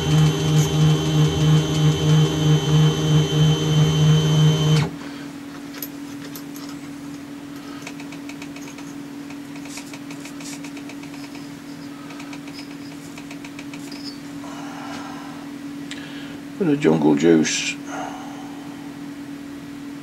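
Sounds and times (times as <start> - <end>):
electric motor pulsing hum: 0.0 - 5.0
faint steady hum: 0.0 - 20.0.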